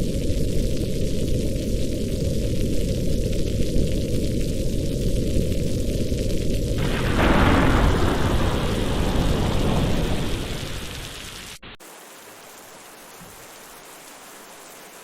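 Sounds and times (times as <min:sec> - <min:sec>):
heavy rain: 0:00.0 - 0:15.0
thunder rumbling: 0:00.2 - 0:11.8.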